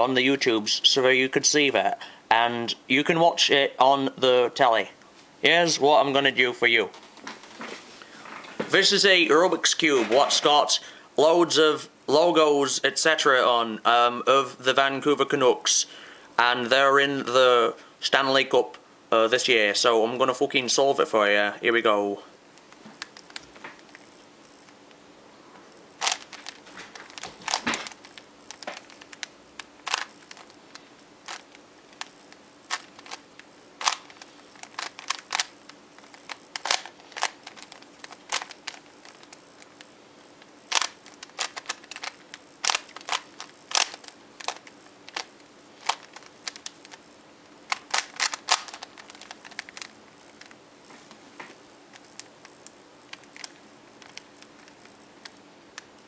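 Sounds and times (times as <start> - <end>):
puzzle cube layers clicking: 26.0 - 30.6, 31.3 - 39.9, 40.7 - 47.0, 47.7 - 50.6.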